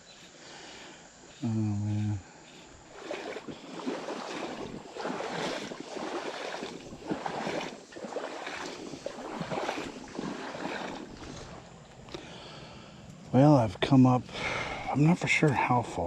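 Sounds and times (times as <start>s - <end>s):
water splashing with wading steps: 1.9s - 13.4s.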